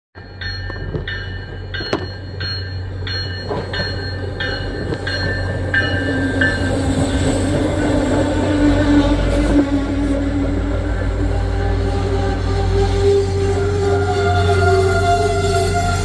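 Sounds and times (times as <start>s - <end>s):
crossing bell dinging: 0.2s - 8.2s
diesel train rumbling: 0.2s - 16.0s.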